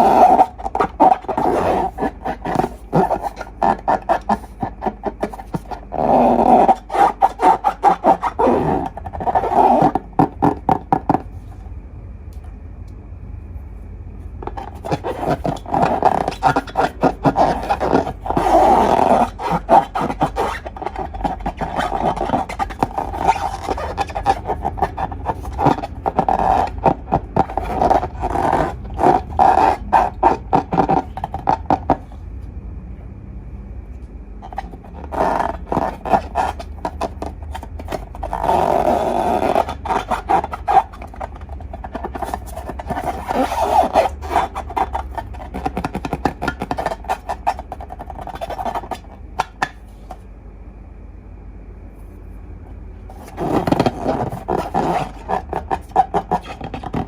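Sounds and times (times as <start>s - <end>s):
rubber balloons squeaking: 0.0s - 11.4s, 14.4s - 32.2s, 34.4s - 50.2s, 53.0s - 57.0s.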